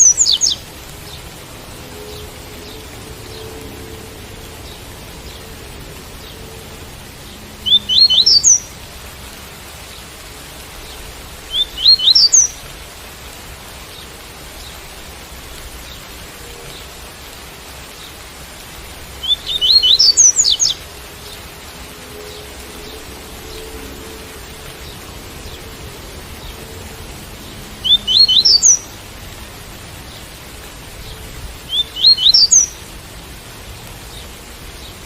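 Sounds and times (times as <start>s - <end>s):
bird singing rising notes: 0.0s - 8.8s, 11.5s - 12.6s, 19.2s - 29.0s, 31.7s - 32.8s
rain hiss: 0.0s - 35.0s.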